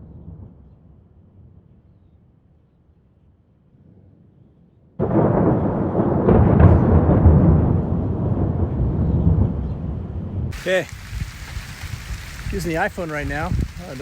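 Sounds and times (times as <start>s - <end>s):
thunder crack: 5.0s - 9.6s, 10.5s - 14.0s
rolling thunder rumble: 5.0s - 14.0s.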